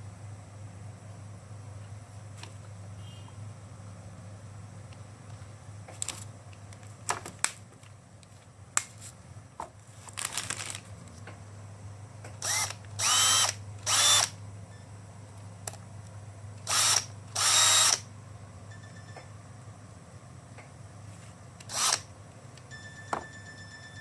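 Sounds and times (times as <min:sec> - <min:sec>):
electric hand drill spinning up: 0:12.4 - 0:14.3, 0:16.6 - 0:18.0, 0:21.7 - 0:22.0.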